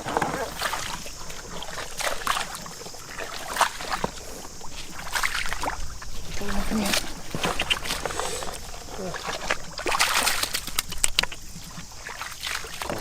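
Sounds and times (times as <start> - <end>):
shallow water splashing: 0.0 - 13.0
low voices: 6.3 - 9.6.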